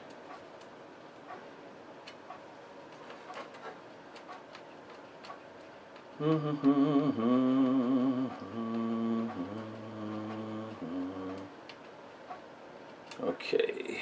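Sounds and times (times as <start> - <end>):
man humming: 6.2 - 11.6.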